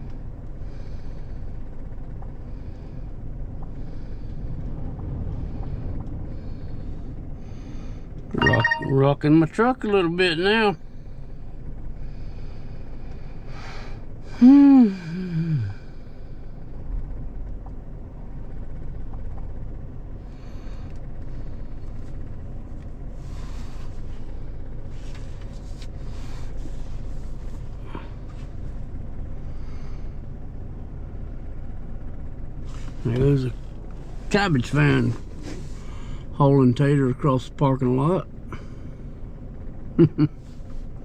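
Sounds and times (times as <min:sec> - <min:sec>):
wind buffeting a truck: 0:03.1 - 0:07.4
person groaning: 0:14.4 - 0:15.8.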